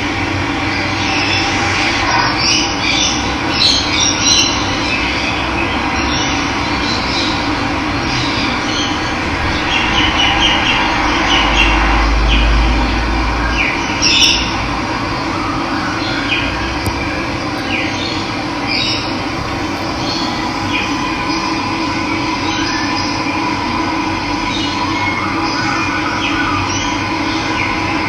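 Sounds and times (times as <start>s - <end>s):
birds chirping: 16.0s - 23.2s
low rumble: 16.6s - 24.5s.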